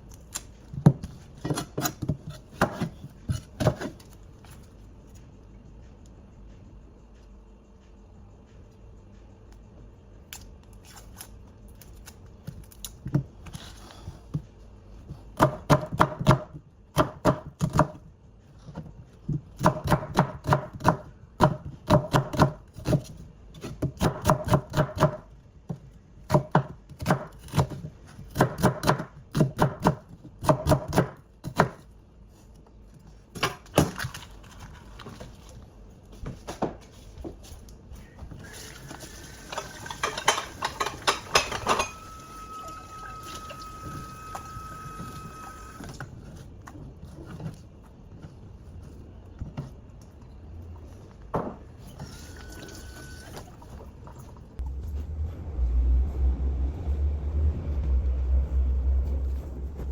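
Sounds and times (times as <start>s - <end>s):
knife chopping on cutting board: 26.3s - 31.8s.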